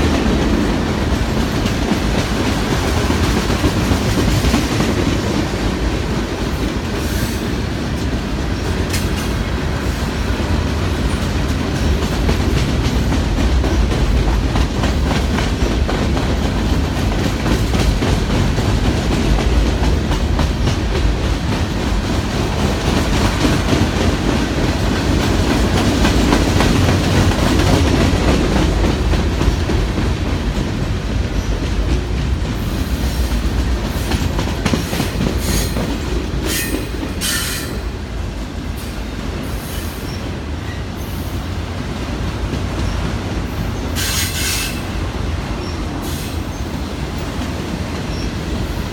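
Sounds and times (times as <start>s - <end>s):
freight train rumbling: 0.0s - 48.9s
wheels clacking over rail joints: 7.8s - 40.9s.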